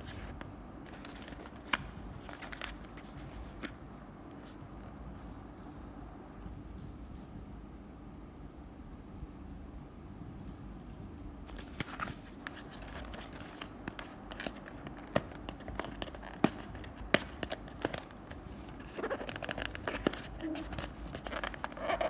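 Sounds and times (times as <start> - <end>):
plastic and cardboard crinkling: 0.0 - 5.0, 11.5 - 22.0.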